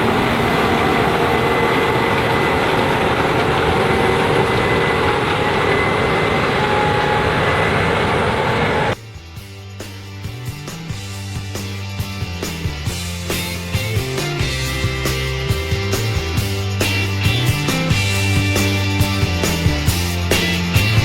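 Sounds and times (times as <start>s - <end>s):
combine harvester running: 0.0s - 9.0s
faint high whine: 0.0s - 9.0s
music: 8.9s - 21.0s.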